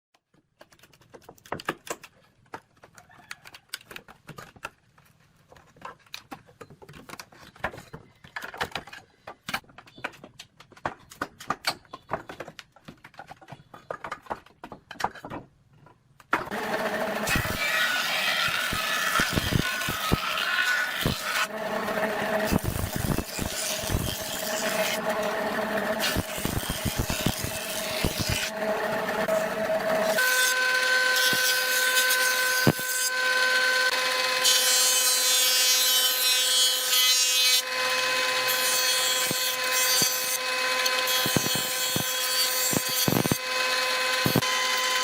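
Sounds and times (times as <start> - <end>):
power tool running: 16.5 - 35.2, 37.5 - 45.0.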